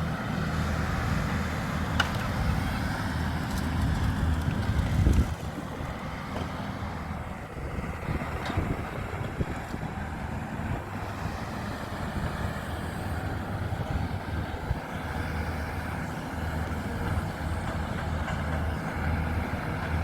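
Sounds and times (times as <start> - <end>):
engine running steadily: 0.0 - 20.0
wind on microphone: 3.8 - 5.9.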